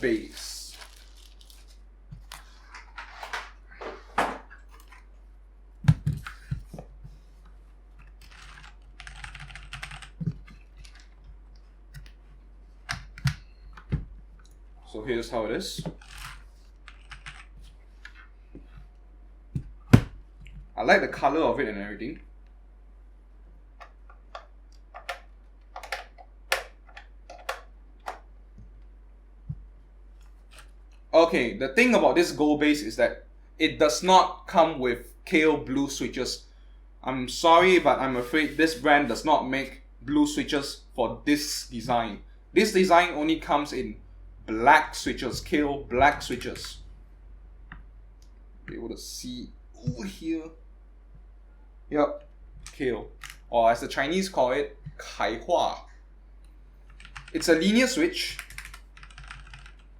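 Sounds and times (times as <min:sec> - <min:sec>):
keyboard clicks and knocks: 0:05.8 - 0:06.9, 0:08.0 - 0:12.2, 0:12.9 - 0:14.2, 0:15.8 - 0:17.5, 0:23.8 - 0:28.7, 0:58.4 - 0:59.9
heavy thump: 0:19.6 - 0:20.2.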